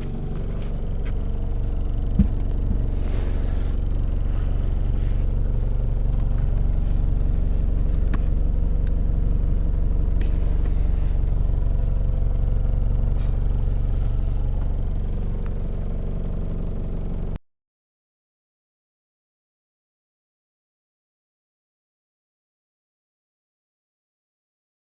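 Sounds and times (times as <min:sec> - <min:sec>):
diesel engine idling: 0:00.0 - 0:17.4.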